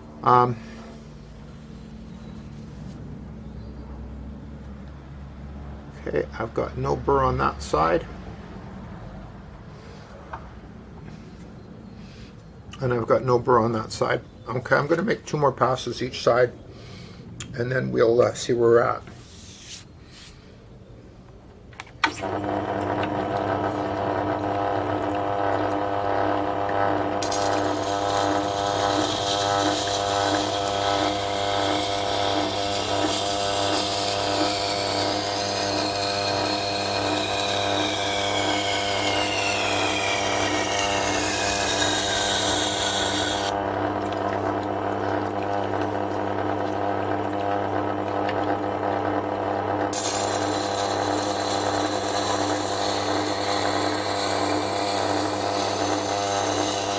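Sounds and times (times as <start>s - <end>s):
sharpener motor hum: 22.0s - 56.9s
knife grinding on stone: 39.6s - 43.5s.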